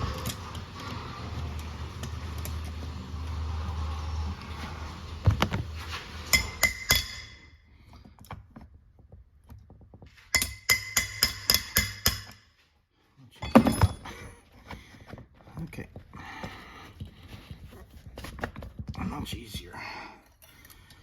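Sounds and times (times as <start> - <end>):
metal tapping on metal: 10.3 - 12.4.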